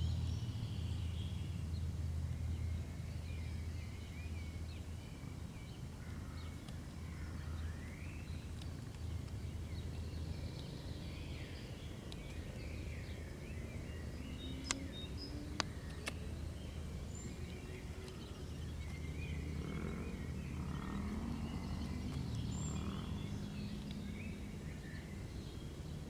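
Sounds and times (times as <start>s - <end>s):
steady low rumble: 0.0s - 26.0s
sharp clicks: 15.6s - 16.3s.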